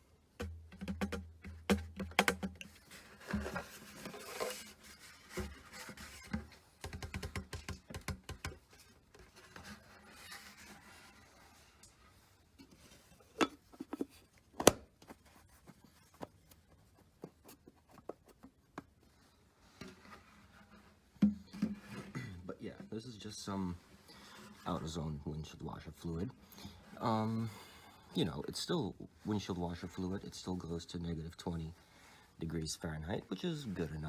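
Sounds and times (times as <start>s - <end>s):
plastic clicks and taps: 6.8s - 8.6s.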